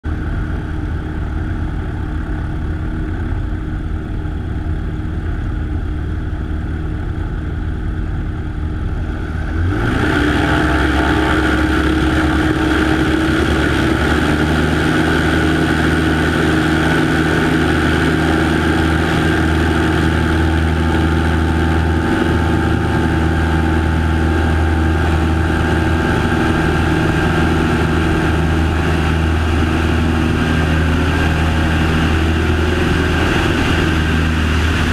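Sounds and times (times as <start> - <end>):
light aircraft engine and propeller: 0.0 - 34.9.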